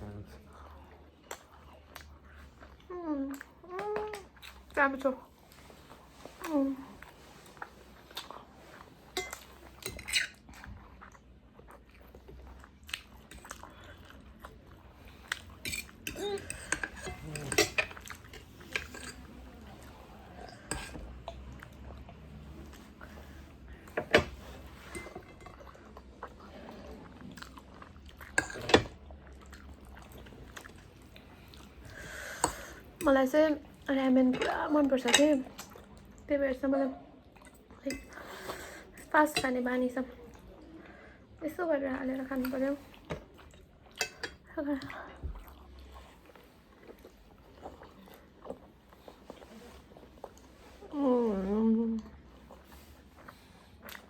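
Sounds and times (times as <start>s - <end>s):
chewing and biting: 7.0s - 19.3s, 52.1s - 54.0s
utensils clicking against dishes: 15.6s - 19.3s, 20.6s - 21.0s, 34.3s - 35.4s.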